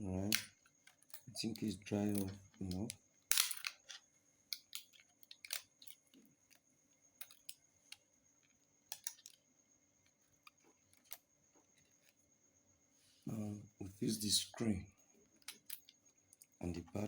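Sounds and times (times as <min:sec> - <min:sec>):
smartphone parts clicking: 0:02.1 - 0:08.0, 0:08.9 - 0:09.5.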